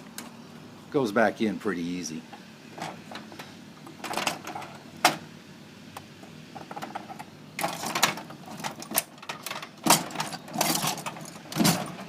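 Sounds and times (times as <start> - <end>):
metal rattling: 6.6 - 12.0
metal drawer sliding: 7.6 - 12.0.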